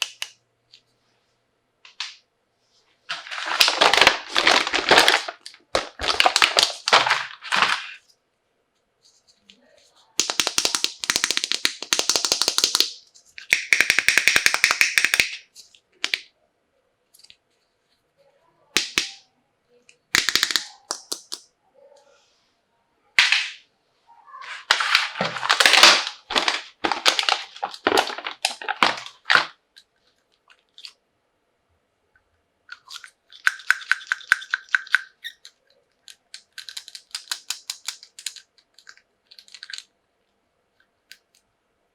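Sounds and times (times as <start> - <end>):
packaging crinkling and rattling: 3.1 - 8.0, 24.6 - 29.6, 36.4 - 39.9
plastic toy pieces clicking: 10.2 - 15.4, 20.2 - 21.4, 32.7 - 39.9.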